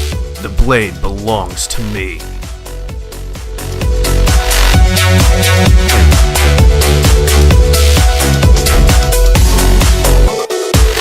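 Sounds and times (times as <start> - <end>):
electronic dance music: 0.4 - 2.4.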